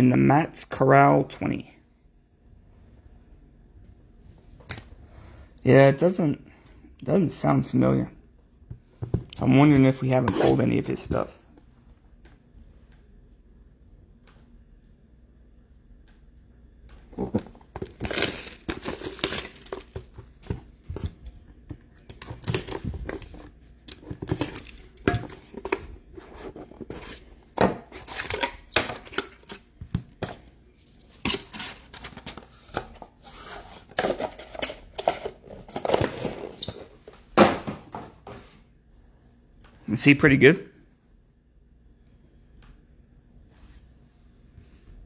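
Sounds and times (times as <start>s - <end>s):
packaging tearing and crinkling: 17.3s - 20.0s.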